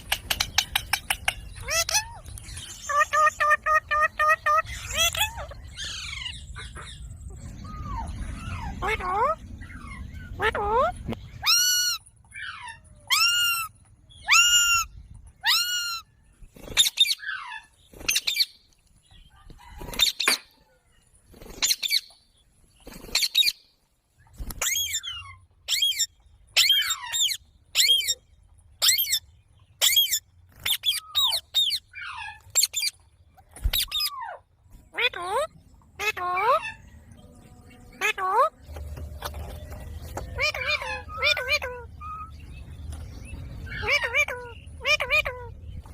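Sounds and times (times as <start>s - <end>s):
parrot calling: 0.3s - 2.2s, 2.8s - 16.1s, 24.6s - 28.2s, 33.7s - 38.6s, 40.2s - 42.4s, 43.6s - 45.6s.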